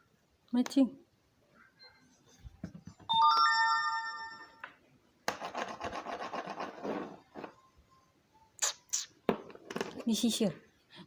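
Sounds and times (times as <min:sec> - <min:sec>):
bell-like chime: 0:03.1 - 0:04.6.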